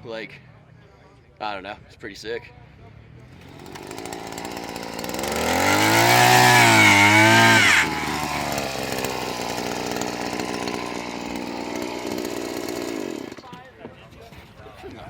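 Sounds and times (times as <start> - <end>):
chainsaw revving: 3.3 - 13.6.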